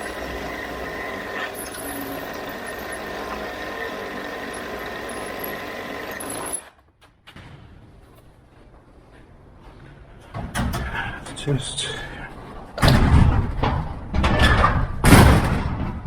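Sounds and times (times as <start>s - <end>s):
machine running with faint whine: 0.0s - 6.7s.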